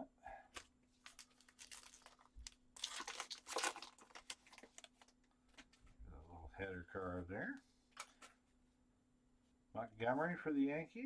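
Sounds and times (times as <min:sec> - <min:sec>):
plastic wrapper crinkling and tearing: 0:00.6 - 0:05.2.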